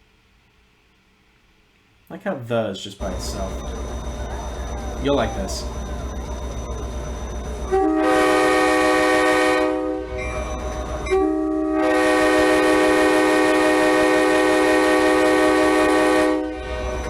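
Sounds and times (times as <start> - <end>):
low rumble: 3.0 - 17.0
locomotive air horn blasts: 7.7 - 10.4, 11.0 - 16.9.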